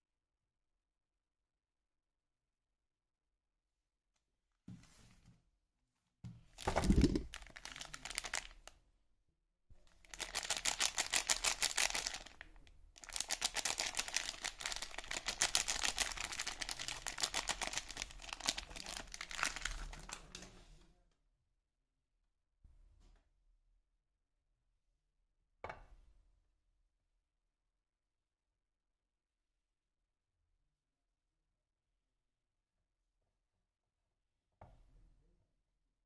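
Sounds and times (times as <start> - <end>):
packaging crinkling: 6.6 - 8.7, 10.0 - 20.4
packaging rustle: 6.6 - 8.7, 10.0 - 20.4.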